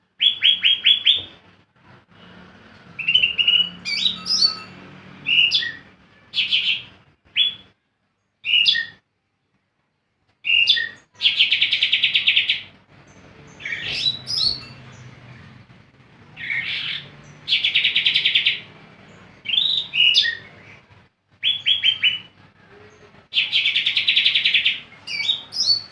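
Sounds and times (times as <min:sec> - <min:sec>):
bird whistling and trilling: 0:03.0 - 0:04.7, 0:05.3 - 0:07.6, 0:08.4 - 0:09.0, 0:10.4 - 0:12.6, 0:13.6 - 0:14.8, 0:19.5 - 0:20.5, 0:21.4 - 0:22.3, 0:23.4 - 0:25.9.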